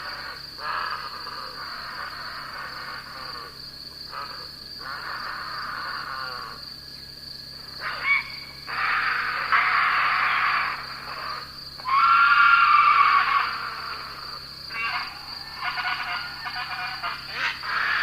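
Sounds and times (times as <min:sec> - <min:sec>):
harsh buzzy animal calls: 0:00.0 - 0:06.6, 0:07.8 - 0:18.0
high insect trill: 0:00.0 - 0:18.0
gliding animal call: 0:07.8 - 0:18.0.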